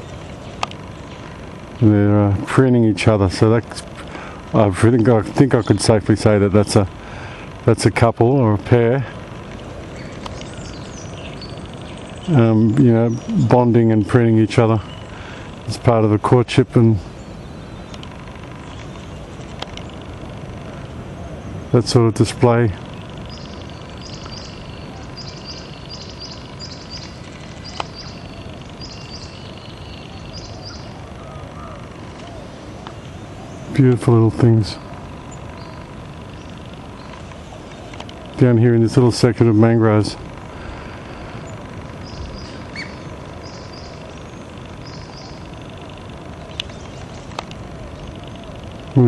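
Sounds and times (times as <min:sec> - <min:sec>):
small birds chirping: 0:00.0 - 0:49.0
steady low rumble: 0:00.0 - 0:49.0
sharp click: 0:17.9 - 0:18.2, 0:18.8 - 0:20.0, 0:37.9 - 0:38.2, 0:46.5 - 0:47.6.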